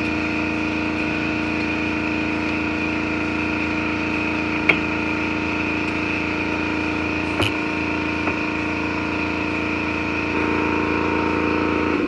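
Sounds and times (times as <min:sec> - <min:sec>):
air compressor humming: 0:00.0 - 0:12.0
sharp click: 0:07.3 - 0:07.6.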